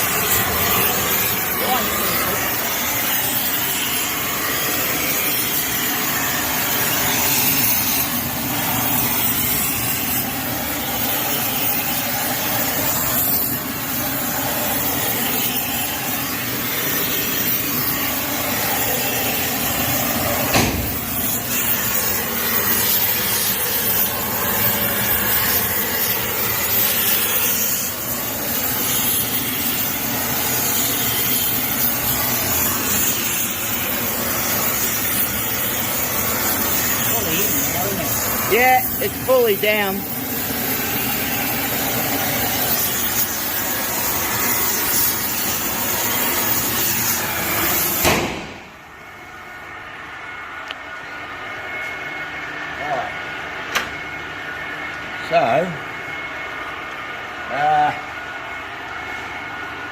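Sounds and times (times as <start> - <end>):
gas torch hissing: 0.0 - 59.9
sharp knock: 20.5 - 20.9, 48.0 - 48.7.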